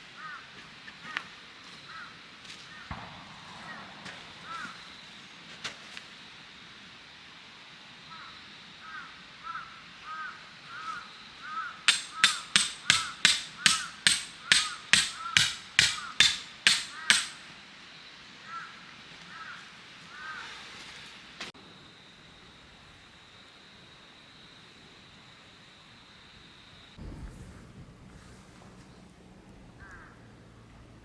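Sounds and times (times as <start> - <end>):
hammer striking steel tent peg: 11.9 - 17.4.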